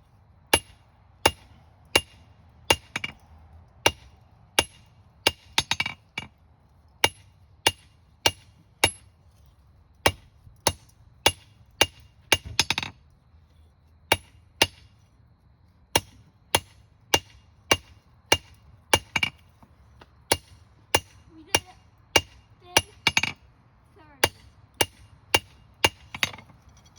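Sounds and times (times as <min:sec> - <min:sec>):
hammer striking steel on anvil: 0:03.9 - 0:06.0, 0:20.3 - 0:23.4, 0:24.2 - 0:26.5.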